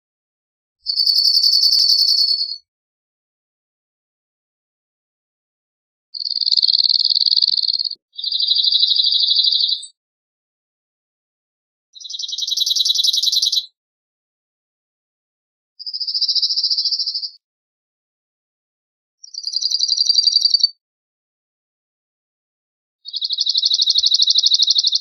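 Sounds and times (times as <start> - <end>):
bird singing rapid trills: 0.9 - 2.7, 6.2 - 10.0, 12.0 - 13.8, 15.8 - 17.4, 19.2 - 20.8, 23.1 - 25.0.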